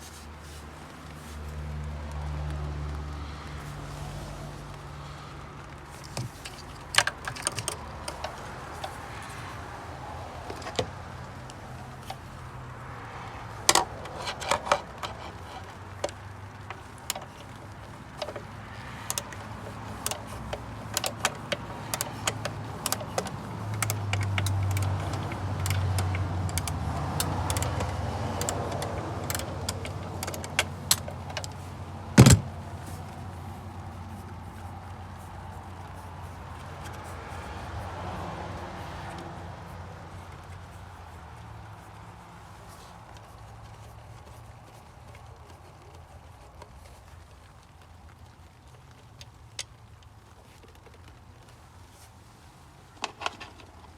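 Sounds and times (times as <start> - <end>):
metallic clicks of hand tools: 6.0 - 9.4, 13.5 - 31.6.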